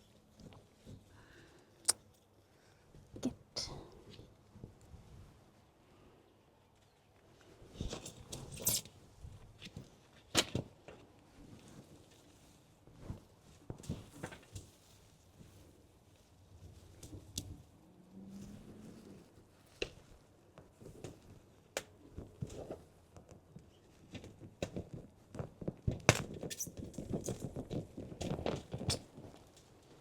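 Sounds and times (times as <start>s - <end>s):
plants and soil rustling: 11.2s - 30.0s.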